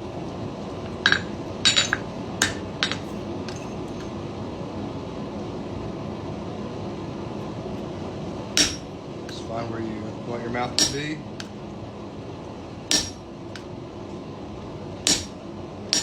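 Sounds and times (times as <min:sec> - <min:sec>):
steady background noise: 0:00.0 - 0:16.0
metal tools clinking on anvil: 0:00.9 - 0:04.1, 0:08.6 - 0:09.4, 0:10.8 - 0:11.5, 0:12.9 - 0:13.2, 0:15.1 - 0:16.0.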